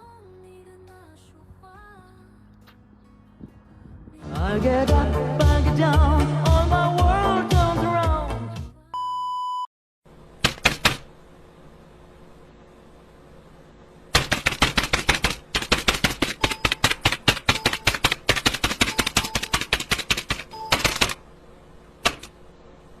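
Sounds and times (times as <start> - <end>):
rapid sharp clicks: 10.4 - 11.1, 14.1 - 21.2, 22.0 - 22.3.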